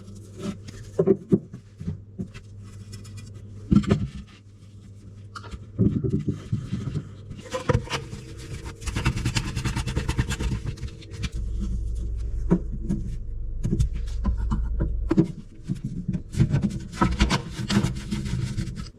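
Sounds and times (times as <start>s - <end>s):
tool scraping with clicks and knocks: 0.0s - 18.9s.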